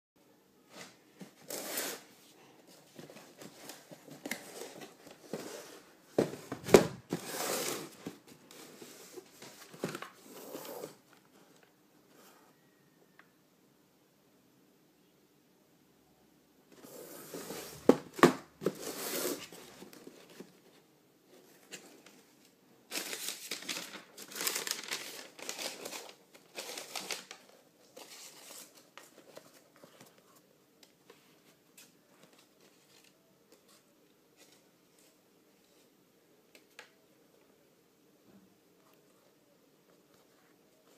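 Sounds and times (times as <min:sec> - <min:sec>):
paper packaging crinkling: 0:22.9 - 0:30.2.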